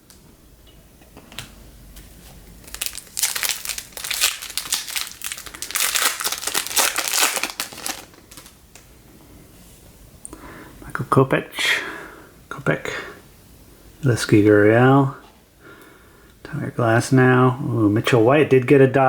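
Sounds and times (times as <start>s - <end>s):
card pack wrapper crinkling: 2.6s - 8.6s.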